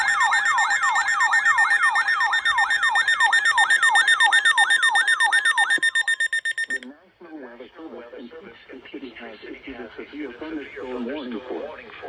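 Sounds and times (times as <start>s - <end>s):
fast-pulsing high beep: 0.0s - 6.8s
weather radio alarm siren sweeps: 0.0s - 6.8s.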